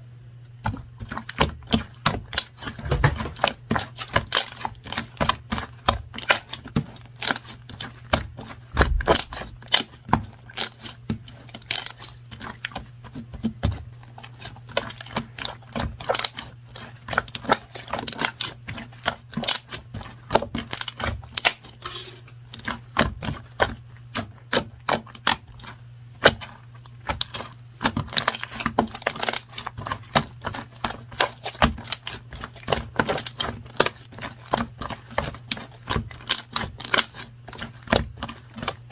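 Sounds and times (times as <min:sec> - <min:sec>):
steady low hum: 0:00.0 - 0:03.7, 0:08.3 - 0:10.5, 0:21.1 - 0:32.3
rapid irregular clicking and tapping: 0:00.4 - 0:21.7, 0:22.4 - 0:38.9.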